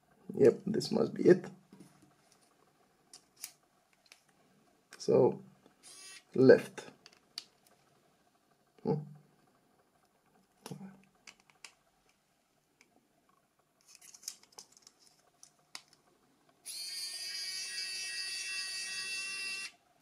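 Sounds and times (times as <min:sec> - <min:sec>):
electric screwdriver motor whine: 0:05.8 - 0:06.3, 0:16.6 - 0:19.8.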